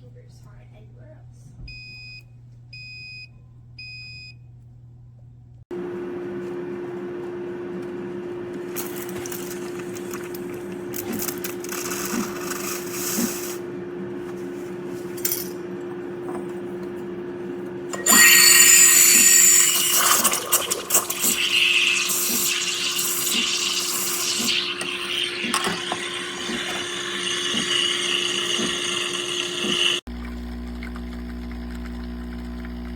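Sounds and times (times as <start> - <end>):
espresso machine pump humming: 5.7 - 15.0, 15.6 - 32.9
espresso machine hissing and spluttering: 8.8 - 13.6, 18.0 - 32.9.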